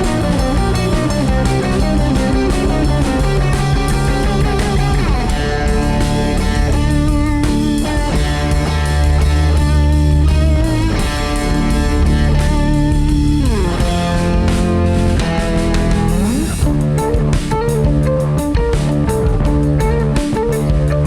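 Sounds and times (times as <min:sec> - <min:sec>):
rock music with electric guitar: 0:00.0 - 0:21.0.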